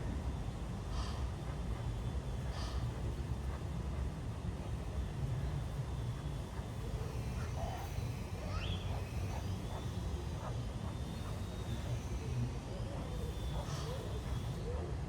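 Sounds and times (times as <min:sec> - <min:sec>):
small birds chirping and whistling: 0:06.6 - 0:14.6.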